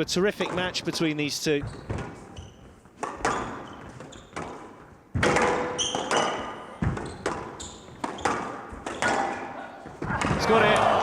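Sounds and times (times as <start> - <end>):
shoe squeaks on court floor: 1.6 - 4.8, 5.6 - 9.2.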